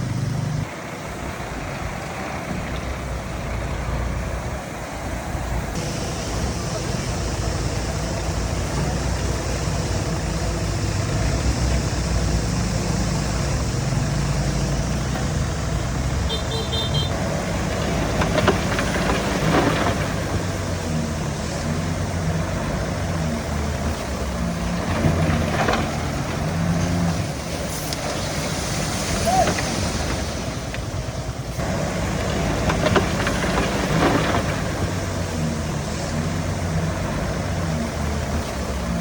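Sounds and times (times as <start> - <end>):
heavy machinery diesel engine: 0.0 - 39.0.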